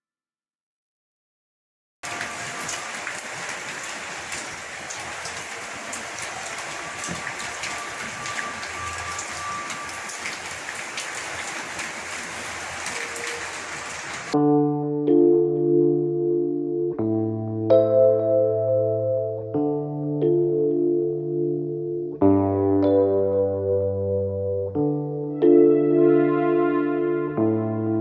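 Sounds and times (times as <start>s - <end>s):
steady rain falling: 2.0s - 14.4s
music: 7.7s - 10.0s, 14.4s - 28.0s.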